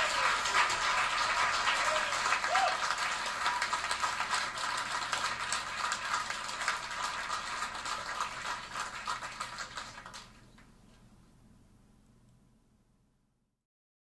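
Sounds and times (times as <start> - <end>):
applause: 0.0 - 10.7.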